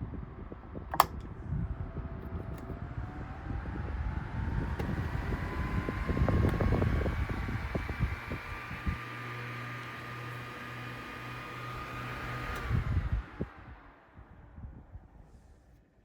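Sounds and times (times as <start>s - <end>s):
air buffeting microphone: 0.0s - 9.0s
steady low hum: 0.0s - 9.4s
fan motor whine rising: 0.0s - 15.8s.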